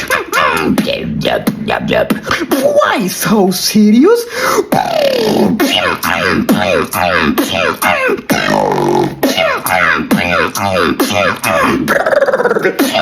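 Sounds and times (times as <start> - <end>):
falling vocal glides: 4.5 - 13.0.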